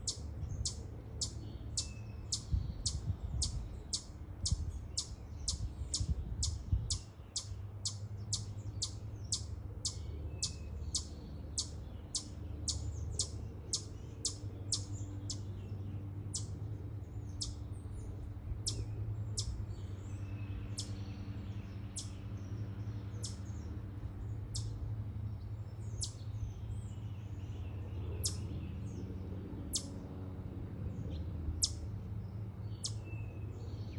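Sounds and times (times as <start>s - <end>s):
chipmunk chip call: 0.0s - 15.5s, 16.3s - 16.5s, 28.2s - 28.4s, 31.6s - 31.8s.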